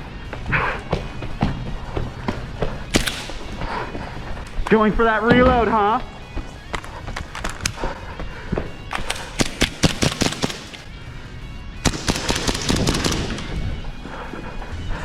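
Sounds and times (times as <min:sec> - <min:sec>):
airsoft guns firing: 0:02.9 - 0:03.7, 0:07.1 - 0:07.9, 0:08.9 - 0:10.9, 0:11.8 - 0:13.7.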